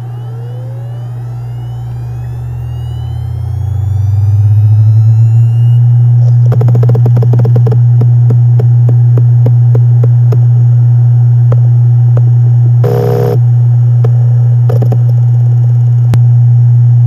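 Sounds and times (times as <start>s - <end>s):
hard drive spindle hum: 0.0s - 17.0s
short buzzing burst: 12.8s - 13.4s.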